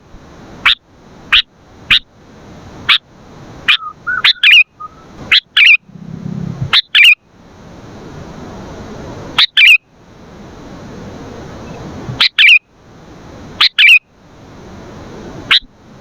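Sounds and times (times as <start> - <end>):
bird chattering calls: 3.7 - 5.9, 6.7 - 7.2, 13.6 - 14.0.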